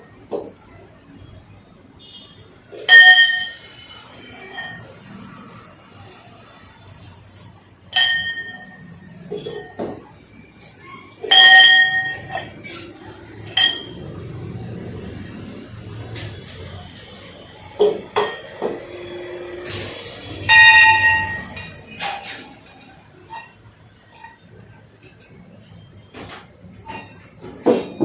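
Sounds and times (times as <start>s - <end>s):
brass bell ringing: 20.5s - 21.7s.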